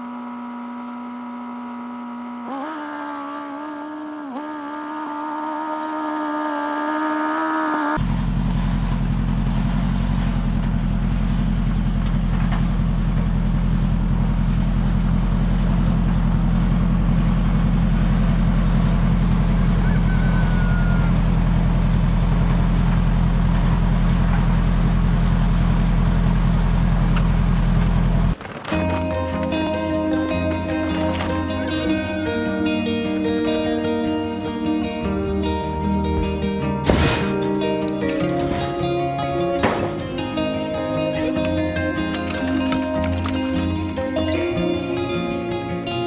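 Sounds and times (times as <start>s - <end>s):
tractor engine droning: 0.0s - 46.0s
music: 28.7s - 46.0s.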